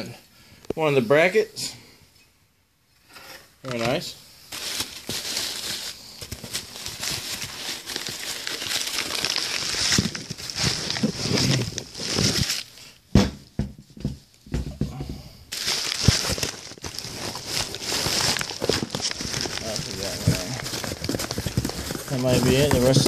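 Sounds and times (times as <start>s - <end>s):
shredded paper rustling: 4.5s - 12.7s, 15.5s - 23.0s.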